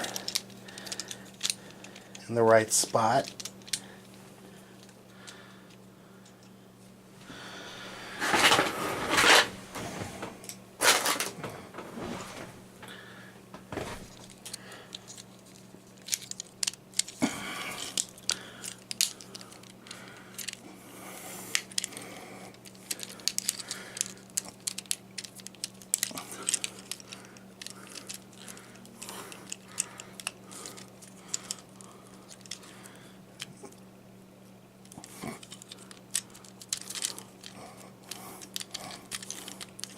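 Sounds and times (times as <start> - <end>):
plastic parts clicking: 0.0 - 2.2, 2.8 - 4.1, 14.2 - 20.6, 21.5 - 33.7, 34.8 - 39.9
rustling handling noises: 0.0 - 7.0, 8.1 - 20.6, 21.4 - 39.9
faint electrical hum: 0.0 - 39.9.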